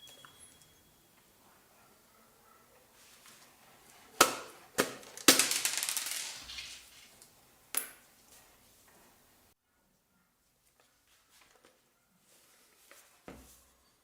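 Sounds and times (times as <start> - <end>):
small hard pieces rattling: 5.0 - 6.9.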